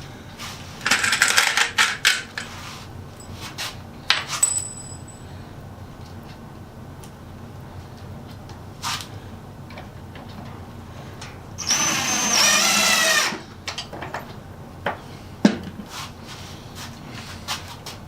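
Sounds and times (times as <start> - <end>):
power drill whining: 11.6 - 13.5.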